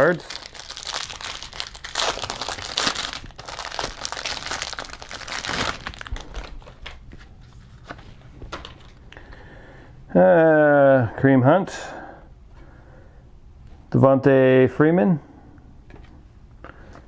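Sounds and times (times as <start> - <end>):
plastic wrapper crinkling and tearing: 0.0 - 8.0.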